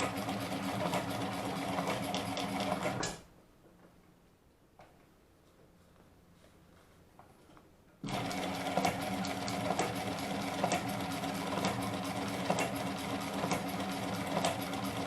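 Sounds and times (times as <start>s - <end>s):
sewing machine clattering: 0.0s - 3.2s, 8.0s - 15.0s.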